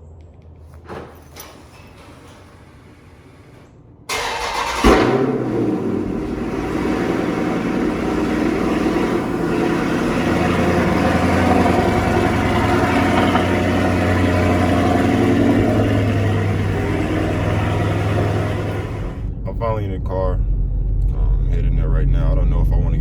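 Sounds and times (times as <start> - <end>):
car engine idling high: 2.0 - 19.3.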